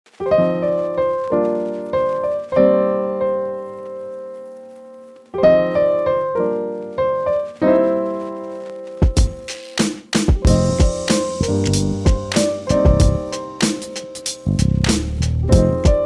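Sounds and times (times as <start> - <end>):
keyboard chords: 10.2 - 16.0.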